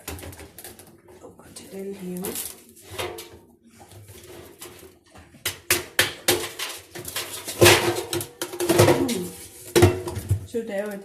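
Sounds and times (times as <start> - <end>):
ice block knocking in washing machine: 5.4 - 10.4.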